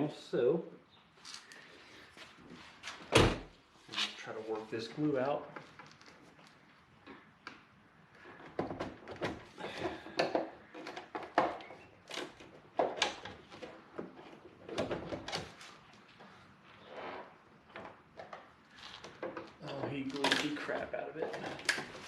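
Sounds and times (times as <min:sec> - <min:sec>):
plastic knocks and creaks: 0:08.2 - 0:15.5, 0:17.7 - 0:22.0.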